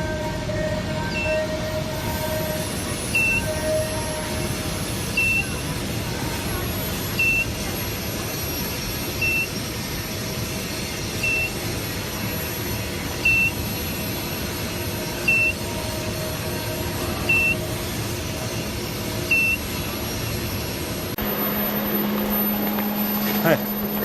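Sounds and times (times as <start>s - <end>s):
electronic beeper beeping: 5.1s - 5.6s, 7.2s - 7.6s, 15.2s - 15.7s, 17.3s - 17.7s, 19.3s - 19.7s, 21.2s - 24.0s.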